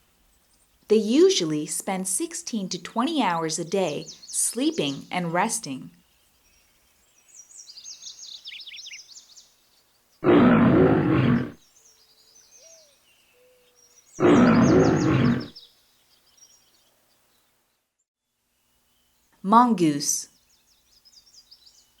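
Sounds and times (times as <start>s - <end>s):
small birds chirping: 0.2s - 17.9s, 18.5s - 22.0s
lion roaring: 10.2s - 11.6s, 14.2s - 15.6s.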